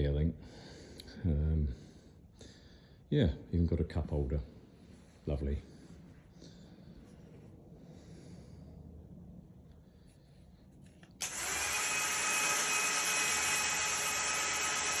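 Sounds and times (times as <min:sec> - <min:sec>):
power tool motor whining: 0:11.2 - 0:15.0.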